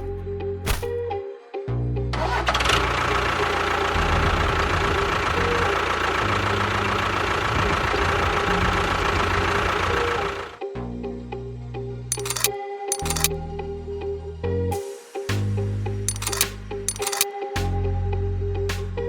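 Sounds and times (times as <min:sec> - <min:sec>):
engine running with rattly chug: 0:02.2 - 0:10.6, 0:12.1 - 0:13.3, 0:16.1 - 0:17.2.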